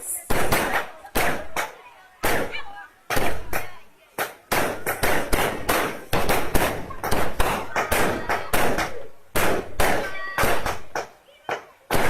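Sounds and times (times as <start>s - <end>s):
fireworks banging: 0.0s - 12.0s.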